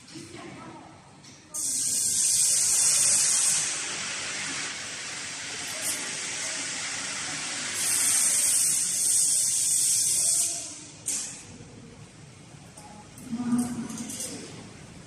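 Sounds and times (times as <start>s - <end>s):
steady hissing noise: 1.5s - 11.6s
brief sharp hiss: 1.6s - 11.4s.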